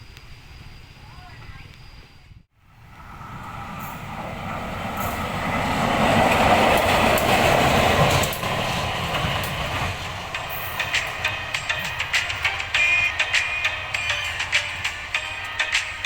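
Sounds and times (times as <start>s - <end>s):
train rumble and wheel noise: 0.0s - 16.0s
sharp clicks of train wheels: 3.4s - 16.0s.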